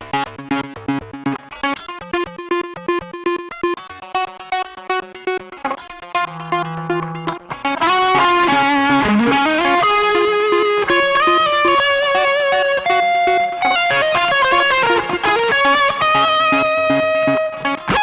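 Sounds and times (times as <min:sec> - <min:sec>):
electric guitar stuttering pulses: 0:06.2 - 0:18.0.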